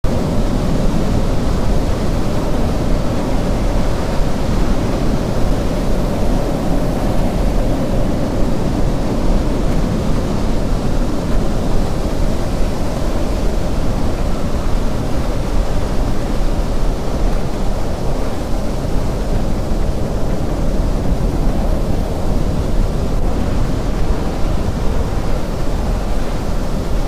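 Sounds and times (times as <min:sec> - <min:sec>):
storm wind on microphone: 0:00.0 - 0:27.0.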